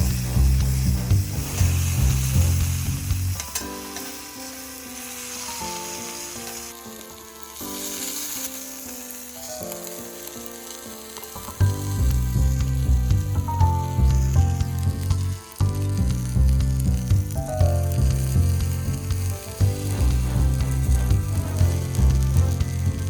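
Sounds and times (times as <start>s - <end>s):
background music with bass beat: 0.0s - 3.4s, 11.6s - 23.0s
food sizzling in a frying pan: 0.0s - 23.0s.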